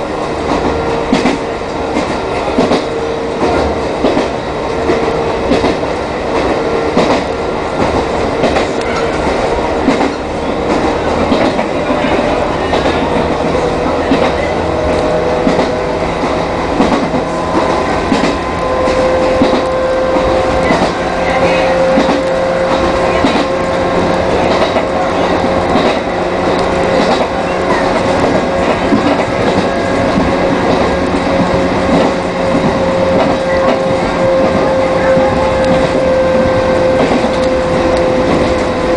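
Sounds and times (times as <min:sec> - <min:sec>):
electric train motor whine: 0:06.4 - 0:38.9.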